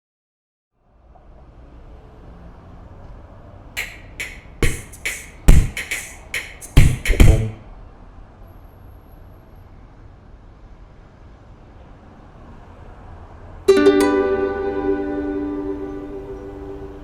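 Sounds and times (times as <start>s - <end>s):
sharp knocks and thumps: 3.8s - 7.6s.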